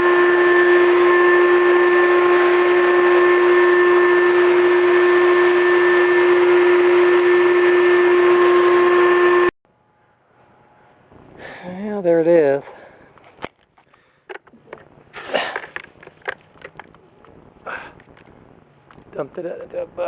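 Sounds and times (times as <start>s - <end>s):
shop vacuum motor running: 0.0s - 9.6s.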